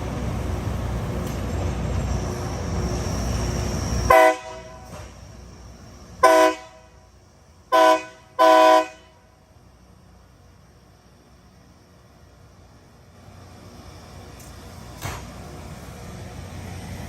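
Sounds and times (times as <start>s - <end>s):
heavy rail machinery rumble: 0.0s - 17.0s
railroad air horn blasts: 4.0s - 5.0s, 6.2s - 7.1s, 7.7s - 9.5s.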